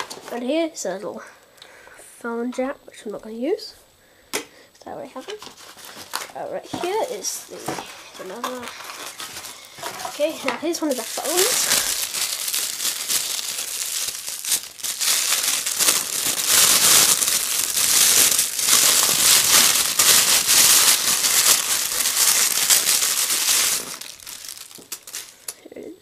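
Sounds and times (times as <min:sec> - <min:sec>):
plastic packaging crinkling: 0:05.2 - 0:25.6.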